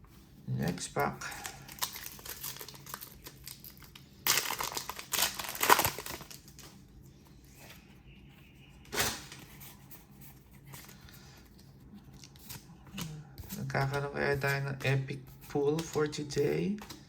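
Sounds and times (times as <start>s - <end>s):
foil wrapper crinkling and tearing: 0.7s - 6.8s.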